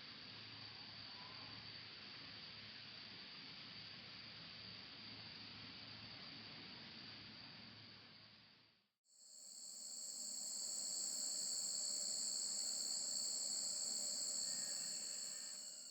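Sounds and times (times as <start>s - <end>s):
high-pitched insect chorus: 9.2s - 15.9s.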